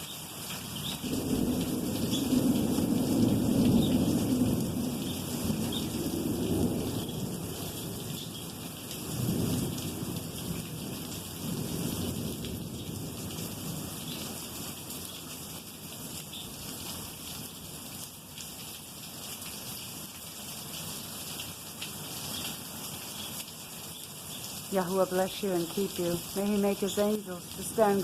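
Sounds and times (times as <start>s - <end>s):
steady rain: 0.0s - 28.0s
rolling thunder rumbling: 1.0s - 8.2s.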